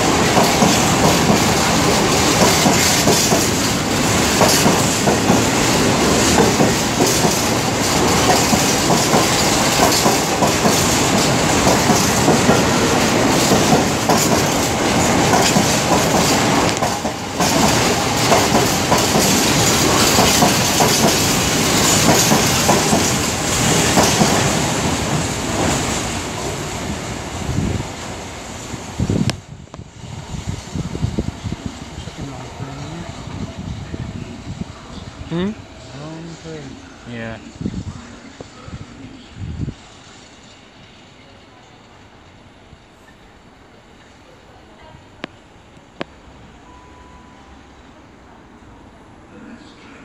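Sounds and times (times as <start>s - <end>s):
train wheels clattering over rail joints: 0.0s - 26.7s.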